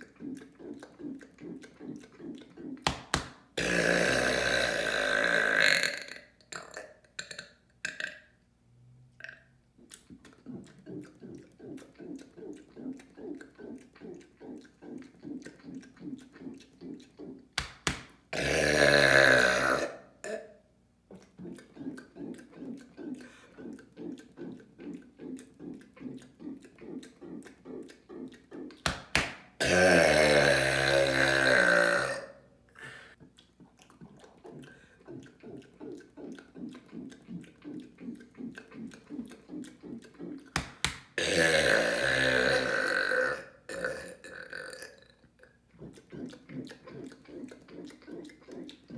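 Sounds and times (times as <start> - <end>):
man burping loudly: 3.6 - 8.2, 18.3 - 20.5, 29.6 - 32.4, 41.2 - 45.1.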